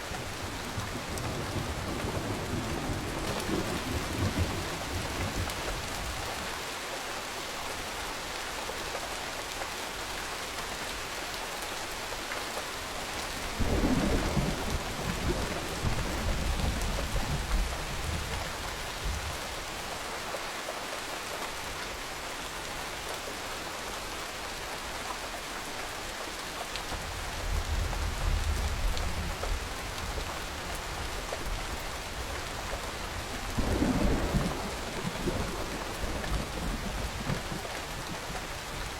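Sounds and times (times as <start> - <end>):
steady rain: 0.0 - 38.9
low rolls of thunder: 0.4 - 6.0, 13.6 - 19.4, 33.2 - 38.9.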